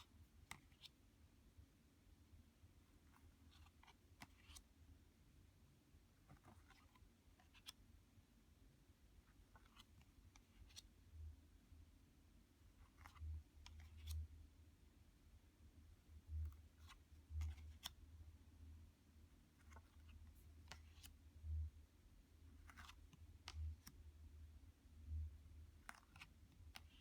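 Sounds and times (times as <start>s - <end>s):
cards clicking and sliding: 0.4s - 1.0s, 3.1s - 4.7s, 6.3s - 7.8s, 12.8s - 14.2s, 16.8s - 18.0s, 19.6s - 21.2s, 22.6s - 24.0s, 25.8s - 27.0s.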